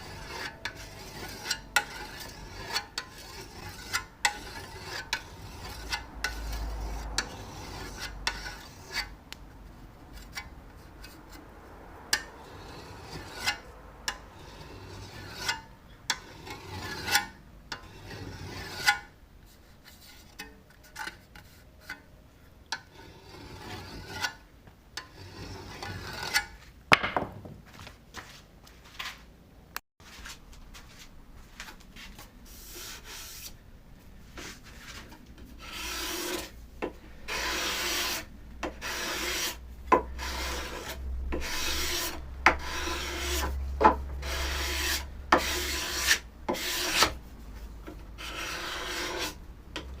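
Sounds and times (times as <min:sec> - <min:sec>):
sharp knocks: 0:26.9 - 0:27.6
rasping on wood: 0:35.6 - 0:36.6, 0:37.3 - 0:47.2, 0:48.2 - 0:49.4.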